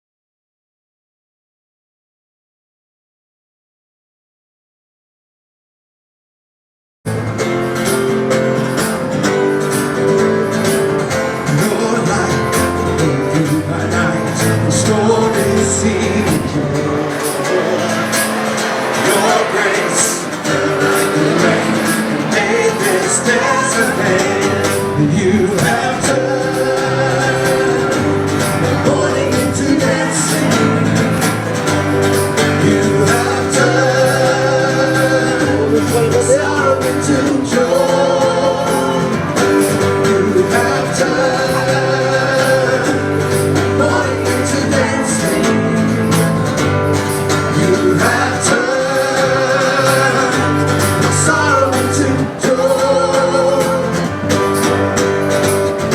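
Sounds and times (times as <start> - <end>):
band with bass and beat: 7.1 - 55.9
voices singing worship song: 11.2 - 54.8.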